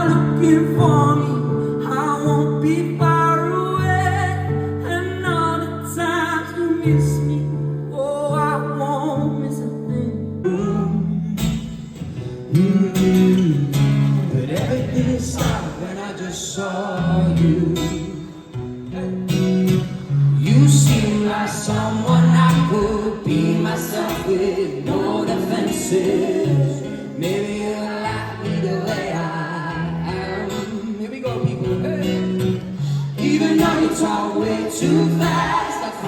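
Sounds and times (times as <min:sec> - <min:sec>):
acoustic guitar strumming: 0:00.0 - 0:36.0
person singing: 0:20.4 - 0:36.0.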